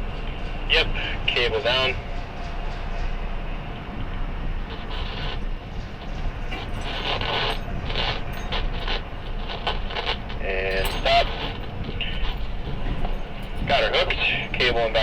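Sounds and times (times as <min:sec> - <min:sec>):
metal rigging clinking and rattling: 0:04.6 - 0:15.0.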